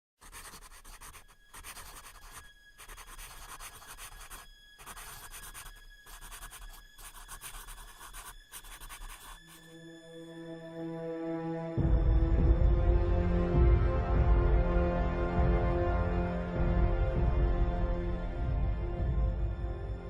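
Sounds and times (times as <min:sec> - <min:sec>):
scratchy crackling noise: 0:00.2 - 0:09.6
background music: 0:00.2 - 0:20.0.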